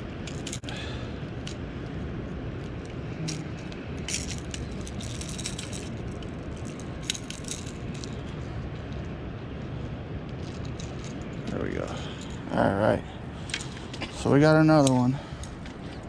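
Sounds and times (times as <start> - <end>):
light clicks and rattles: 2.6 - 9.1, 13.4 - 14.2.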